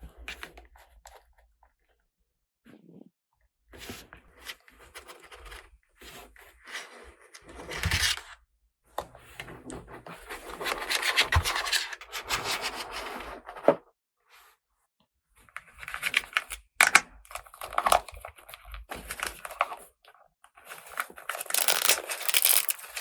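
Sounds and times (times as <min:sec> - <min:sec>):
toy pieces and packaging rubbing: 0:20.7 - 0:23.0.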